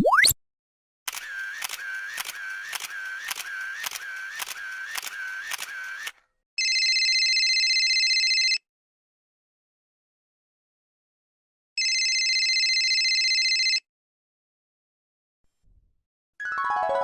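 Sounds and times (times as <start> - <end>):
camera shutter clicks: 1.1 - 6.2
electronic telephone ring: 6.6 - 8.6, 11.8 - 13.8.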